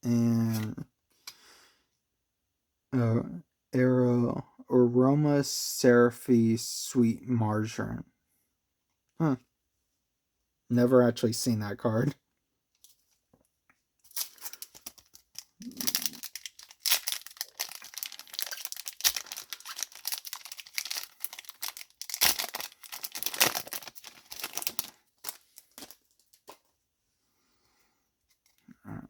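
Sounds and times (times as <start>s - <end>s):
foil wrapper crinkling and tearing: 14.1s - 26.6s.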